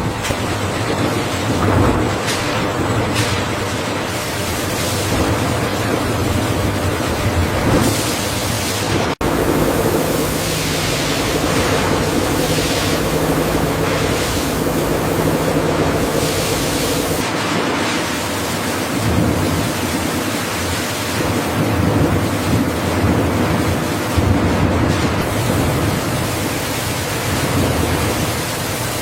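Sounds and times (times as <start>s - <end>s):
industrial machinery hiss and hum: 0.0s - 17.6s.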